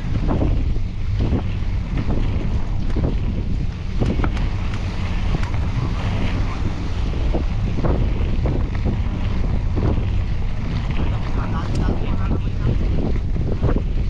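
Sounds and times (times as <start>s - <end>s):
bike knocks and rattles: 0.0s - 5.6s
wind buffeting microphone: 0.0s - 14.0s.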